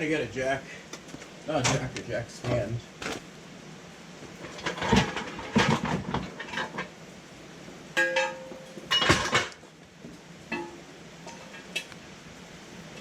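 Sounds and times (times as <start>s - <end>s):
ringing metal strikes: 8.0s - 9.0s, 10.5s - 11.6s.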